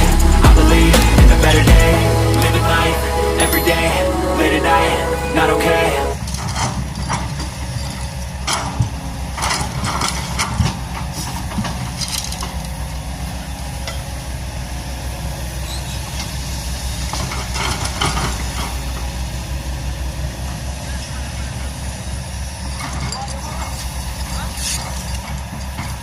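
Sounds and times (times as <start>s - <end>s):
excavator diesel engine running: 0.0s - 6.2s.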